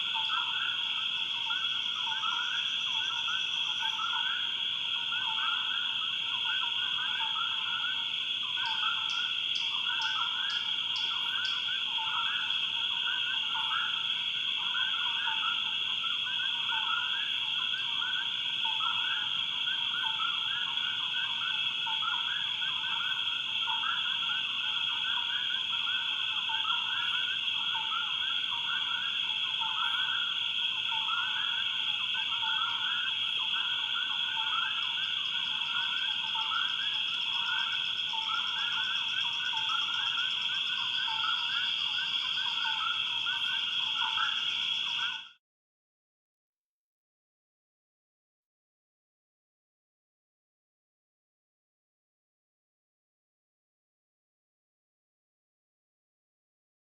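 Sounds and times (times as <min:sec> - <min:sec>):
frogs calling: 0:00.0 - 0:45.4
high-pitched insect drone: 0:00.0 - 0:45.4.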